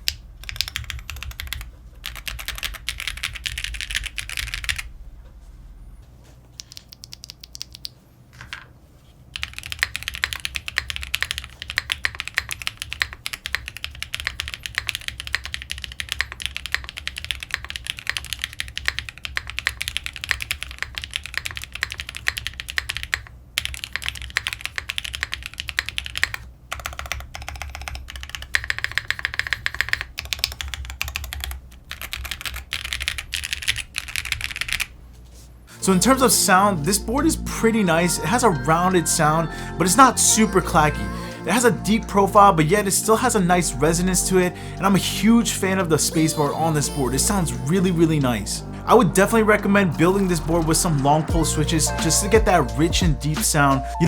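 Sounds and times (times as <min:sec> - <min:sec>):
fast typing on mechanical keyboard: 0:00.0 - 0:04.9, 0:06.6 - 0:08.0, 0:09.4 - 0:35.0.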